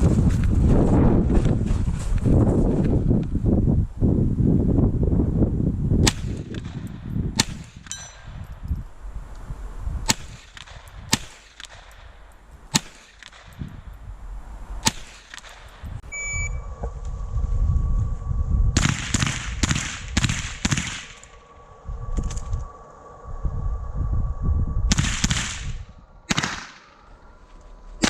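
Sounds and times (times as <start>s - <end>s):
rifle shots with metallic ring: 6.1s - 8.5s, 10.1s - 13.6s.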